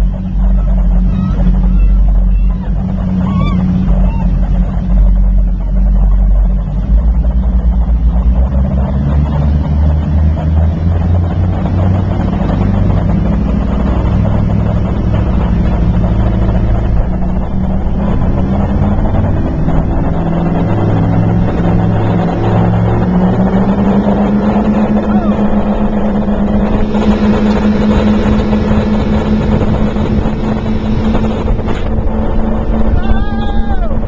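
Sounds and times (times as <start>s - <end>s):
speedboat engine droning: 0.0s - 34.0s.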